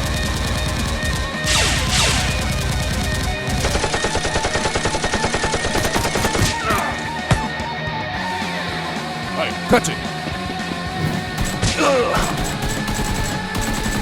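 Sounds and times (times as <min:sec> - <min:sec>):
background music: 0:00.0 - 0:14.0
rapid automatic gunfire: 0:00.3 - 0:06.5, 0:11.1 - 0:14.0.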